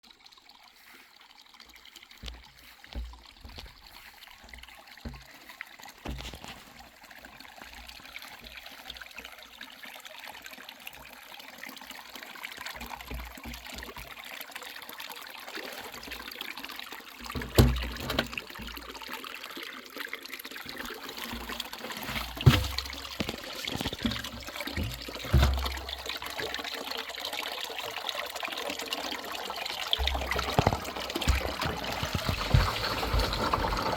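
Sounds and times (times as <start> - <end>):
spring water trickling: 0.0 - 33.9
low bumps: 21.3 - 26.4, 30.0 - 33.9.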